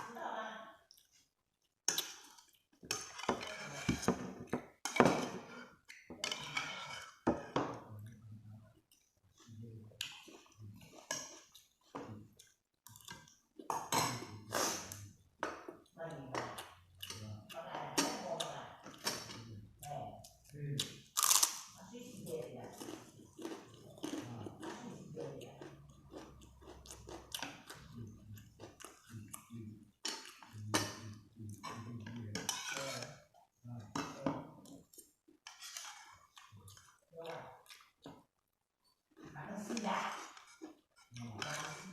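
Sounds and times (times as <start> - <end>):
close chewing and eating: 0.8 - 41.9
chewing and mouth sounds: 22.7 - 32.0, 36.1 - 38.4.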